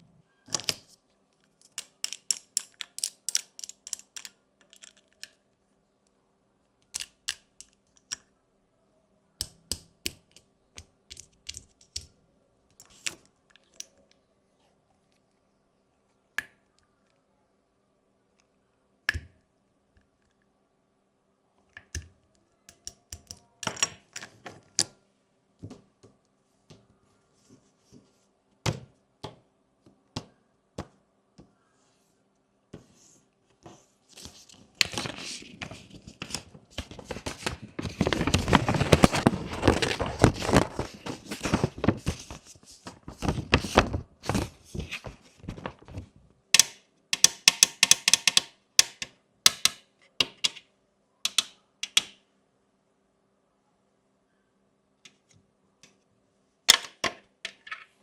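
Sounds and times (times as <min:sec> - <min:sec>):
plastic rustling and rattling: 0:34.3 - 0:46.2
plastic toy clicks: 0:46.6 - 0:50.6.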